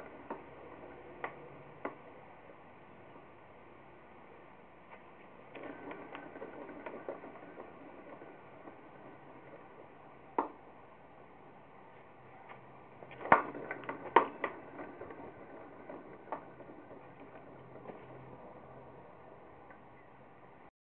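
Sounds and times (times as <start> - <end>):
wheel bearings clicking and popping: 0.0 - 2.2, 4.9 - 11.6, 12.6 - 20.0.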